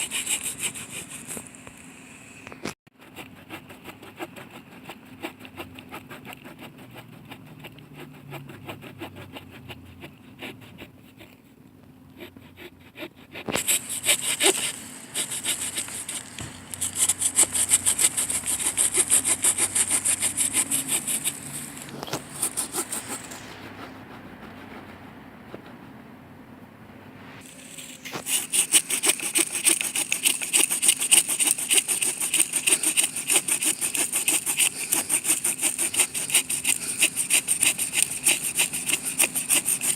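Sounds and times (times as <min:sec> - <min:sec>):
hand saw cutting log: 0:13.3 - 0:24.0, 0:28.0 - 0:39.9.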